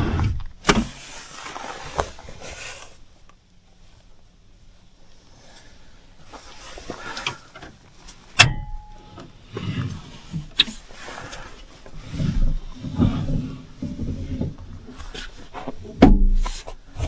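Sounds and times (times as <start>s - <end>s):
rustling and handling knocks: 6.3s - 17.0s.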